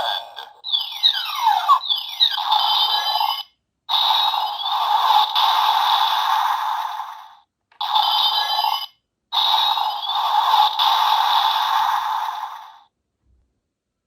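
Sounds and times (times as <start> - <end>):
toy electronic sound effects: 0.0 - 12.8.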